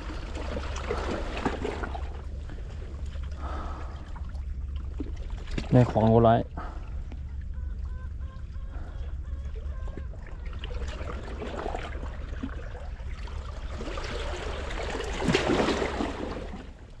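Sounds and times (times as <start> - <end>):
waves splashing against rocks: 13.3 - 17.0.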